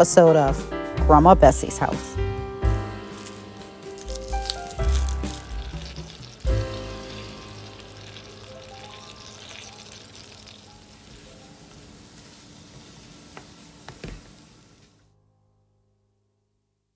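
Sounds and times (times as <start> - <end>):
background music: 0.0 - 11.8
mushrooms sizzling in butter: 3.1 - 15.0.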